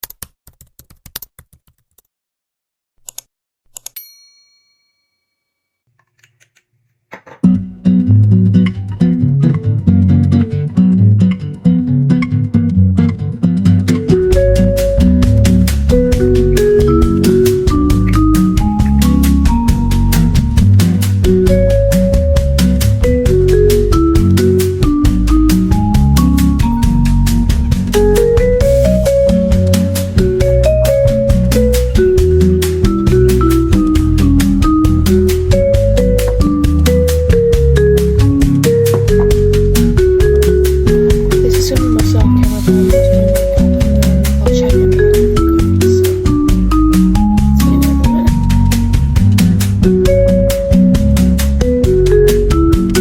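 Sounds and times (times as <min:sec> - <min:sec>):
upbeat electronic music: 0:13.9 - 0:53.0.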